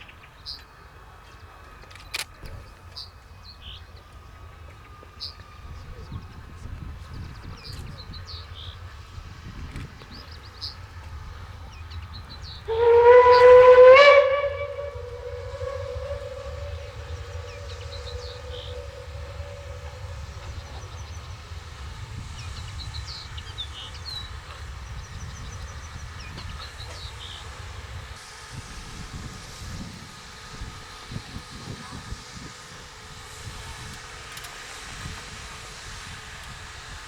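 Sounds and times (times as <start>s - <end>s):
steady low rumble: 5.9s - 32.3s
birds chirping: 10.2s - 27.5s
steam whistle blast: 12.4s - 24.3s.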